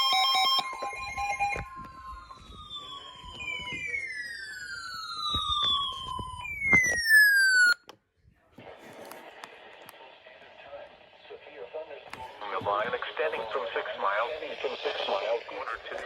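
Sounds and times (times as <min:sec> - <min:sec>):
siren-like tones sliding down: 0:00.0 - 0:07.8
two-pitch alarm tone: 0:00.0 - 0:07.8.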